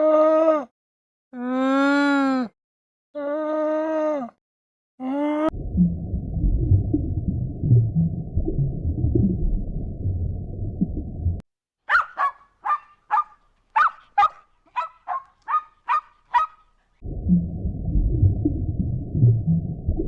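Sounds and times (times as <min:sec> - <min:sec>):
low muffled rumbling: 0:05.5 - 0:11.4, 0:17.0 - 0:20.0.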